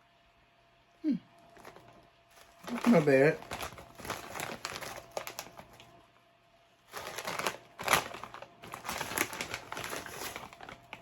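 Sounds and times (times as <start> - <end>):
chip bag crinkling: 1.4 - 6.0, 6.8 - 11.0
chips crunching: 1.5 - 5.9, 6.9 - 11.0.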